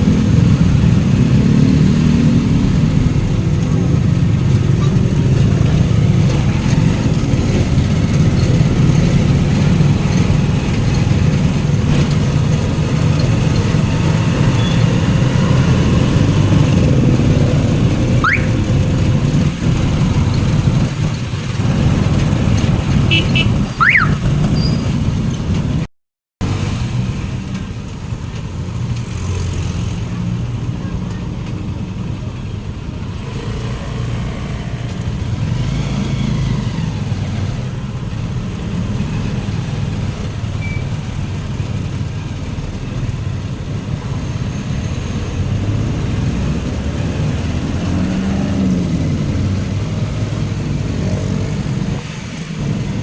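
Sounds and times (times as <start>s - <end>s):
vehicle rumble: 0.0s - 53.0s
rising whistle-like chirps: 18.2s - 18.6s.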